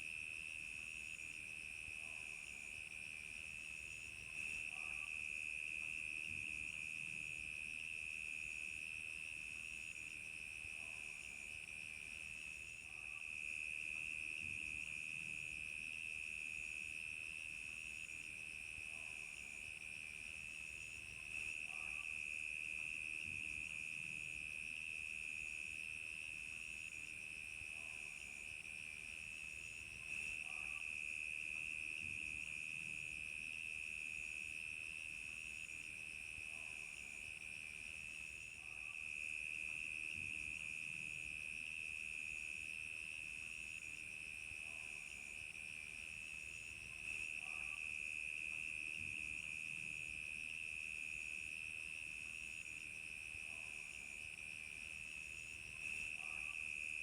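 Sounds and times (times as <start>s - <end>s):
higher repeating cricket chirp: 17.6s - 57.0s.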